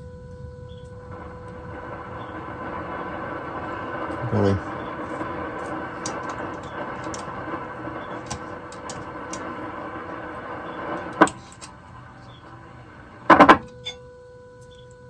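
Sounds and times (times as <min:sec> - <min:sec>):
static hiss: 0:00.0 - 0:15.0
steady test tone from radio: 0:00.0 - 0:15.0
clatter of loud clicks: 0:04.0 - 0:10.1, 0:10.7 - 0:11.8.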